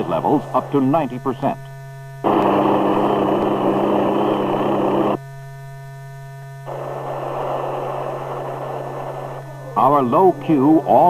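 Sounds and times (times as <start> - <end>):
steady hum: 0.0 - 11.0
helicopter noise: 2.2 - 5.3, 6.6 - 11.0.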